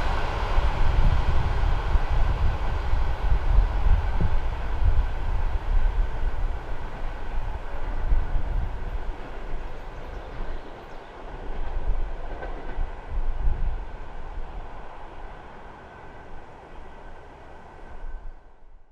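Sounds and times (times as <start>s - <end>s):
train wheels rumbling on rails: 0.0s - 18.5s.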